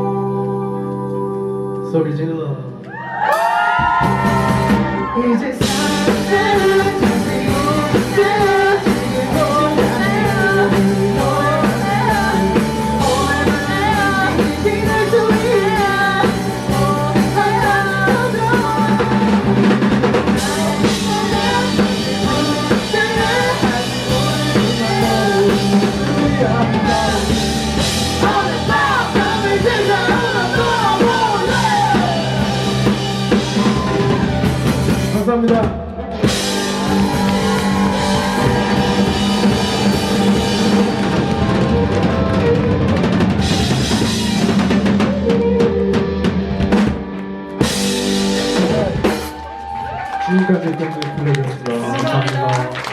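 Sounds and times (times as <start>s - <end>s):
drum kit: 3.3s - 50.2s
rock band playing live: 3.5s - 51.3s
wavering lead melody: 36.2s - 49.3s.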